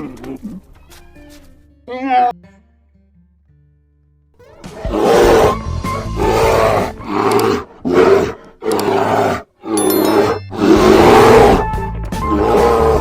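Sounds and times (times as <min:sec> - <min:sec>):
large animal roaring: 0:12.3 - 0:13.0.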